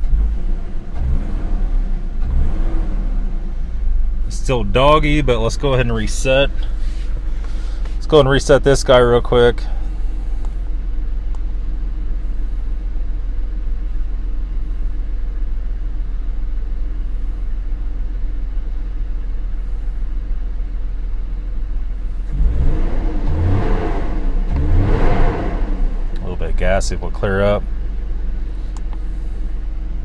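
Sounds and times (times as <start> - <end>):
car engine idling roughly: 3.5 - 22.3, 26.1 - 30.0.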